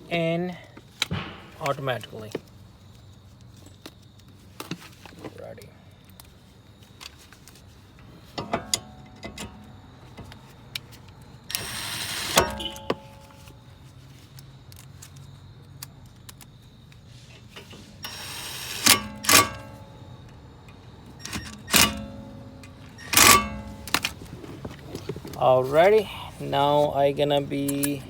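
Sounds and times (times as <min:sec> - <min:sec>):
loud metallic clanks: 0:01.1 - 0:01.8, 0:18.0 - 0:20.0, 0:21.2 - 0:24.2.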